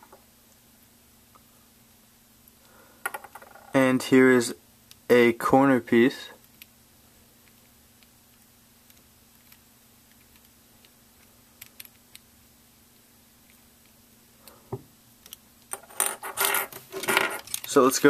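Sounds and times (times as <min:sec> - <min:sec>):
plastic pieces clattering together: 0:17.0 - 0:17.8.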